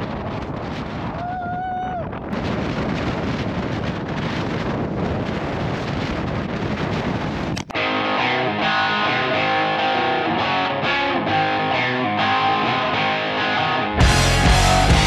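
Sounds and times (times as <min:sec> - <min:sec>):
wind buffeting microphone: 0:00.0 - 0:07.8.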